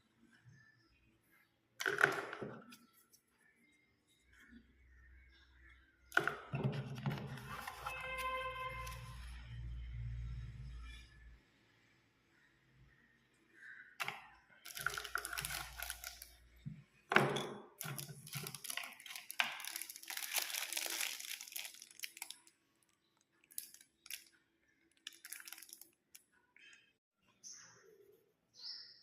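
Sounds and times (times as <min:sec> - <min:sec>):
packaging crinkling and rustling: 0:14.6 - 0:16.4, 0:17.8 - 0:22.5, 0:23.4 - 0:24.3, 0:25.0 - 0:26.0.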